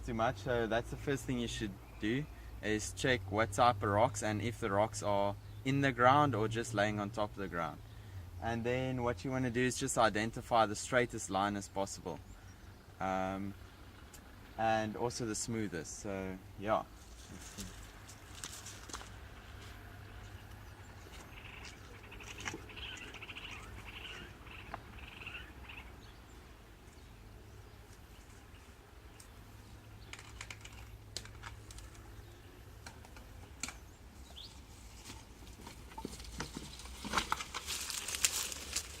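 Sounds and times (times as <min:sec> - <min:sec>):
birds chirping: 0:00.0 - 0:02.9, 0:04.0 - 0:39.0
bike clattering over rocks: 0:35.5 - 0:39.0.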